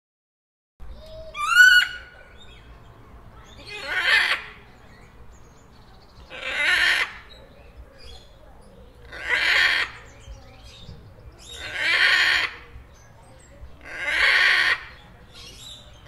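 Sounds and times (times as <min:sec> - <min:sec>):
parrot screeching: 0:01.3 - 0:02.1, 0:03.6 - 0:04.6, 0:06.3 - 0:07.2, 0:09.1 - 0:10.0, 0:11.6 - 0:12.6, 0:13.8 - 0:14.9.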